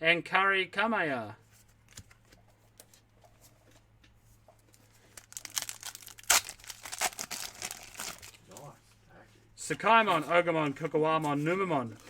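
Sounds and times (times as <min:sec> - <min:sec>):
foil pack crinkling: 0:05.0 - 0:08.6
foil ripping: 0:05.2 - 0:08.4.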